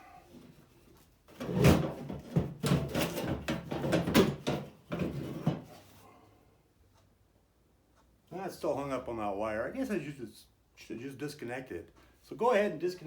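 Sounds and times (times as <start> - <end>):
metal rattles and scrapes: 1.3 - 6.0.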